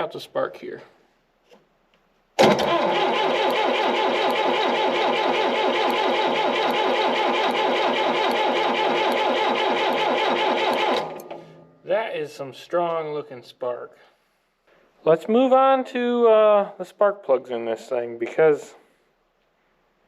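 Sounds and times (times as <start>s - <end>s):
starter cranking engine: 2.4s - 11.4s.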